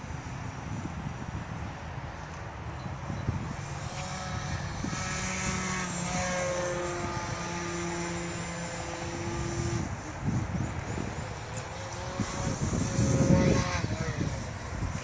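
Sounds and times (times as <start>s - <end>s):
model airplane motor and propeller: 0.0s - 15.0s.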